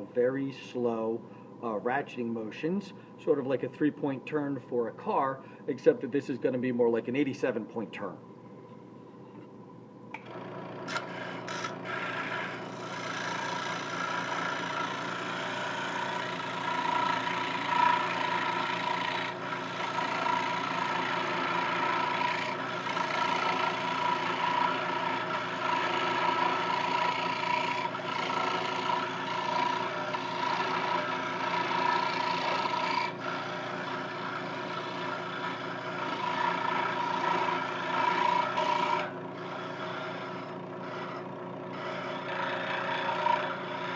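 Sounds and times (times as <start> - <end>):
scroll saw cutting wood: 10.9 - 43.9.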